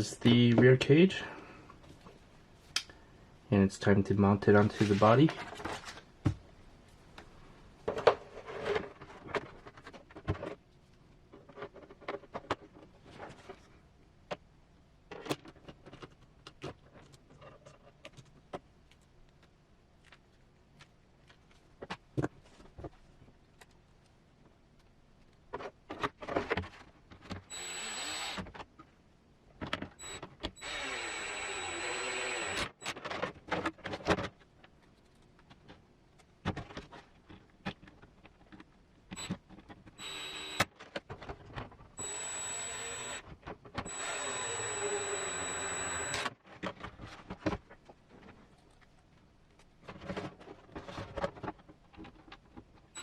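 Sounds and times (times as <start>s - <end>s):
plastic parts clicking and knocking: 11.3s - 13.6s, 14.2s - 23.0s, 28.4s - 30.6s, 32.8s - 40.0s, 40.6s - 41.9s
electric screwdriver whirring: 27.5s - 28.4s, 30.0s - 32.7s, 40.0s - 40.7s, 42.0s - 43.2s, 43.8s - 46.3s.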